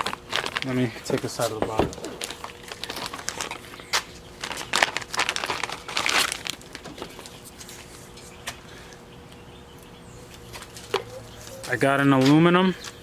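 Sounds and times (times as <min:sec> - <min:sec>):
packaging crinkling: 0:00.0 - 0:08.4.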